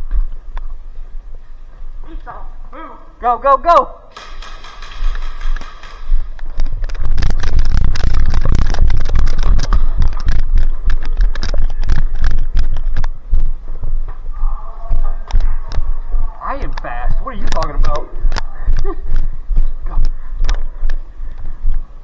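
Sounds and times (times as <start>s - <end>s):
gear clicking and rattling: 4.1s - 13.2s
running footfalls: 4.1s - 22.0s.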